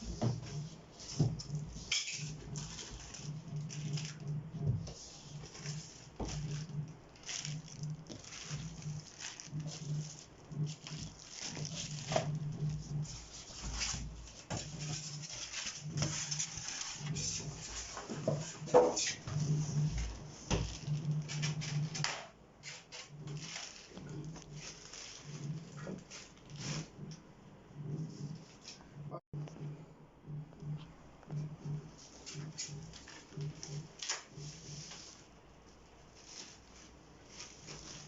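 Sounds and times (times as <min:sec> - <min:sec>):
packing material rustling: 0:01.4 - 0:04.3, 0:05.1 - 0:19.2, 0:22.6 - 0:26.9.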